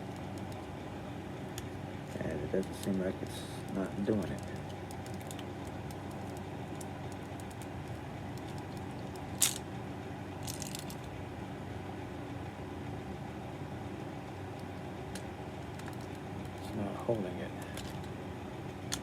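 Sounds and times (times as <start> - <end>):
low room hum: 0.0 - 19.0
plastic parts clicking: 8.4 - 9.6, 17.6 - 18.1.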